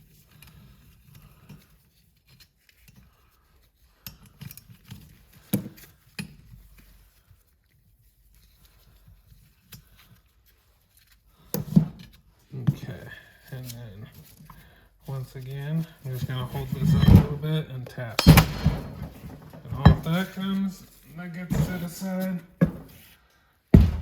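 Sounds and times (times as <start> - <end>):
clicks and knocks of tools: 18.2 - 20.2.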